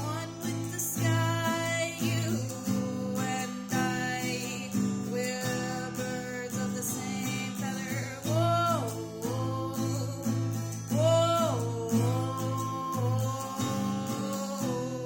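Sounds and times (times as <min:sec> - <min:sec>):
acoustic guitar strumming: 0:00.0 - 0:15.0
person singing long notes: 0:06.6 - 0:15.0.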